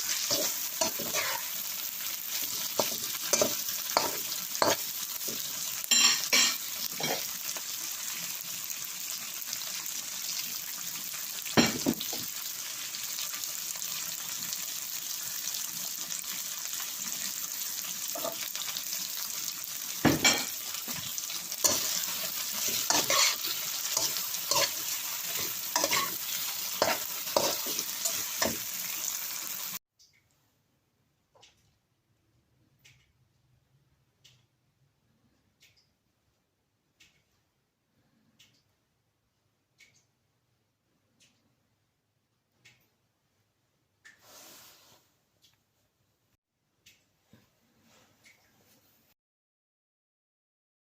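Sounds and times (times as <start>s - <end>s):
spatula scraping and knocking pan: 0.0s - 1.5s, 2.4s - 7.3s, 20.0s - 28.8s
fish sizzling in a hot pan: 0.0s - 29.8s.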